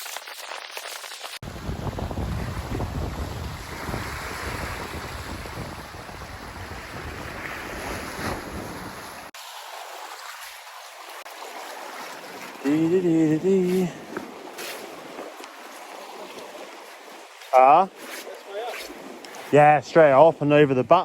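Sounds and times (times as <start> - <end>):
sea waves on shore: 0.0 - 21.0
wind buffeting microphone: 1.4 - 9.3.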